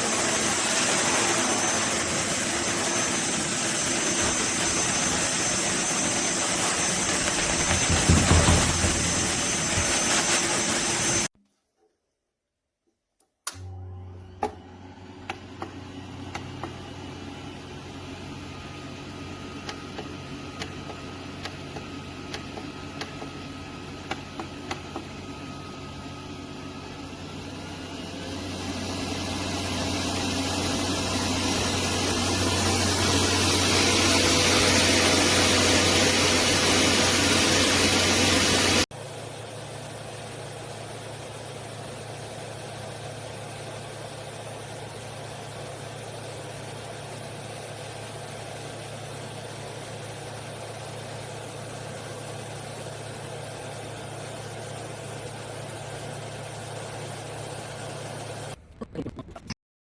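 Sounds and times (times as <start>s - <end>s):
dog dryer motor and rushing air: 0.0s - 11.3s, 14.4s - 38.9s.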